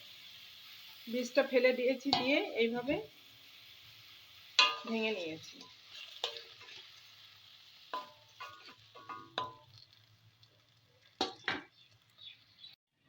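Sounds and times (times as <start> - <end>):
faint sizzling in oil: 0.0 - 12.8
metal spatula clinking on pan: 4.6 - 6.8, 7.9 - 9.8.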